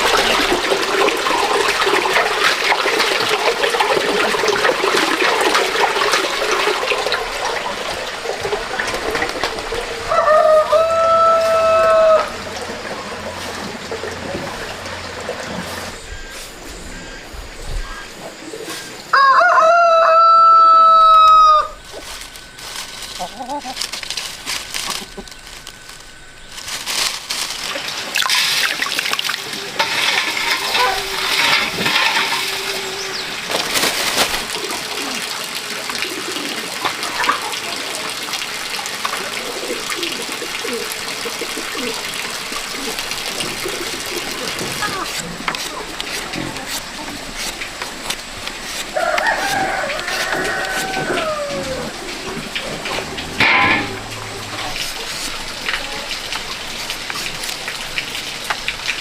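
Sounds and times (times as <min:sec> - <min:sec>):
rooster crowing: 0:10.1 - 0:12.5, 0:19.1 - 0:21.8, 0:29.9 - 0:33.2, 0:48.9 - 0:52.1
steady unpitched noise: 0:44.6 - 0:56.2.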